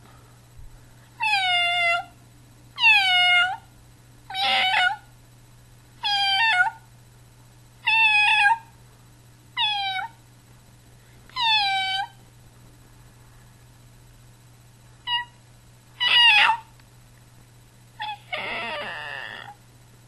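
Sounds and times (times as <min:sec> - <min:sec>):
kitten meowing: 0:04.3 - 0:05.0, 0:09.6 - 0:10.2, 0:11.4 - 0:12.2, 0:15.1 - 0:15.4, 0:16.0 - 0:16.7.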